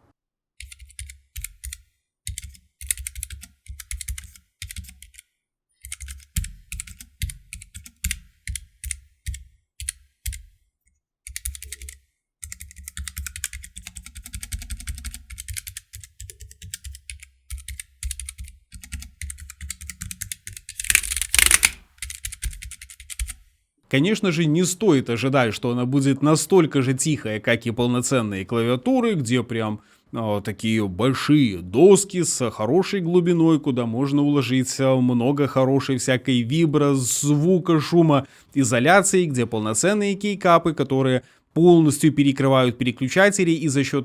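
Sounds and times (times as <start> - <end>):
mechanical keyboard typing: 18.8 - 23.2.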